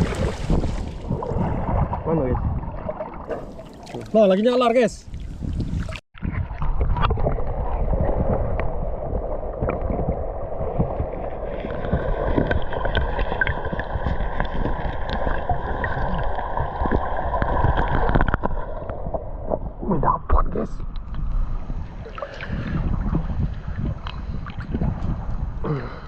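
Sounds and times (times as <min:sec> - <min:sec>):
small splashes: 0:00.0 - 0:02.0, 0:02.7 - 0:04.2
water sloshing and gurgling: 0:00.0 - 0:26.0.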